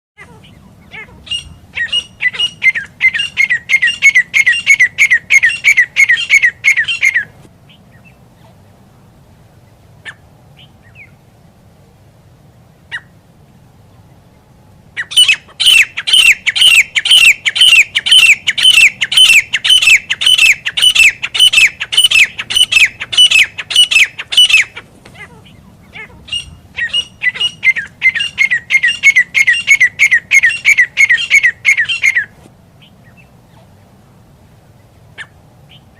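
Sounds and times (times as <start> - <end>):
francolin calling: 0.2 - 8.5, 14.0 - 33.9.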